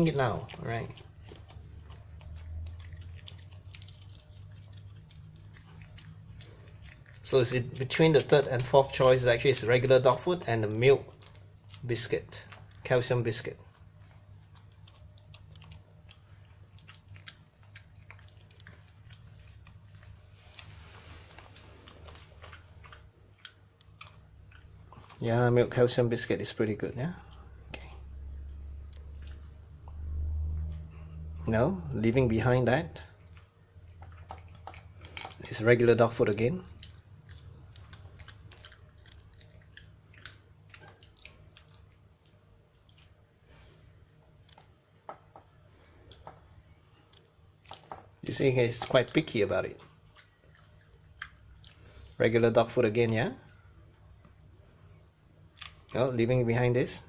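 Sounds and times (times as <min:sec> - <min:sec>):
dog crunching dry treats: 0:00.0 - 0:27.0, 0:33.9 - 0:42.0, 0:47.1 - 0:53.1
steady low hum: 0:00.0 - 0:57.0.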